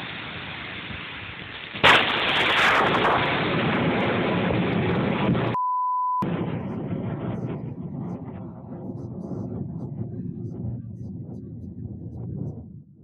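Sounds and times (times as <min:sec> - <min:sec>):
rain: 0:00.0 - 0:05.6
thunder rumbling crash: 0:00.0 - 0:05.6, 0:06.2 - 0:13.0
steady beep: 0:05.6 - 0:06.3.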